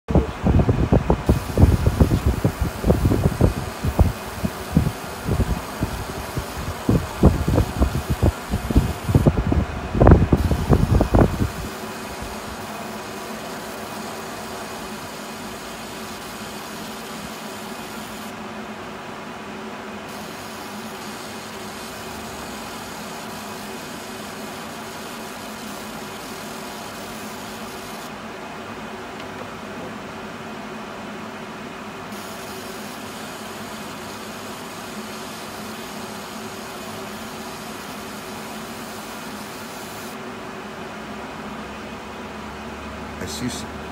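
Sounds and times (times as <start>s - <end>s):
mechanical fan hum: 0.0s - 43.9s
hiss: 1.2s - 9.4s, 10.0s - 18.4s, 20.0s - 28.1s, 32.1s - 40.2s.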